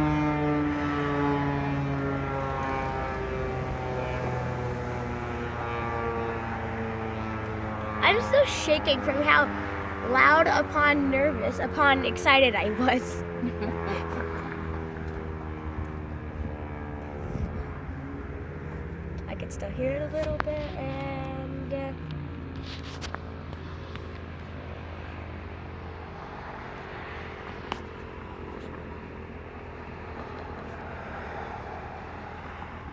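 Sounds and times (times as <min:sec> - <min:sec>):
faint steady tones: 0:00.0 - 0:26.0
low outdoor rumble: 0:00.0 - 0:32.9
warning siren wailing: 0:00.0 - 0:32.9.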